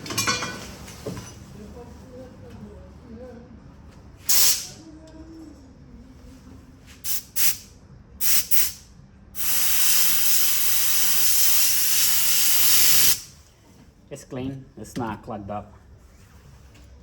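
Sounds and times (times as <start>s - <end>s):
pressurized air jet hissing: 4.3s - 4.8s, 7.1s - 8.8s, 9.4s - 13.4s.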